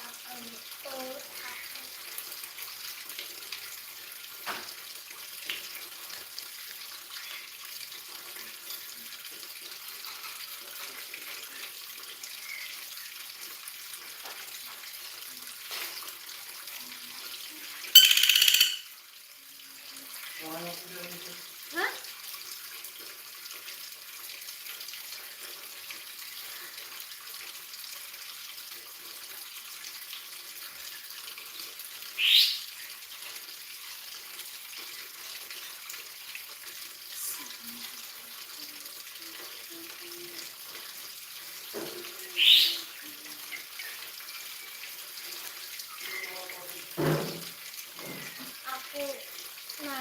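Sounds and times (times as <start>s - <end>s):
woodpecker calls rising in pitch: 18.0s - 18.8s.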